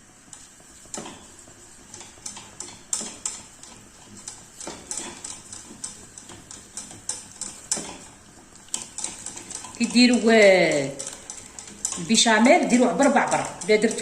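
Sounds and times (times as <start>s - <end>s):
utensil scraping a saucepan: 0.3s - 14.0s.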